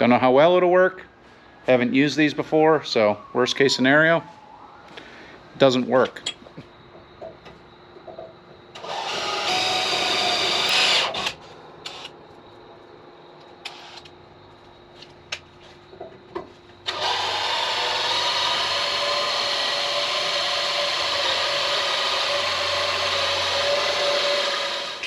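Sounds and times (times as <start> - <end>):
electric drill cutting steel: 8.8 - 12.1, 16.8 - 25.0.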